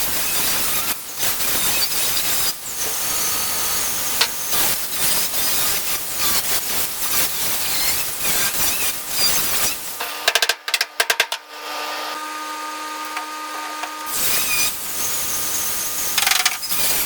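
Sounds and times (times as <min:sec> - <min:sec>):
power tool abrading metal: 0:00.0 - 0:17.0.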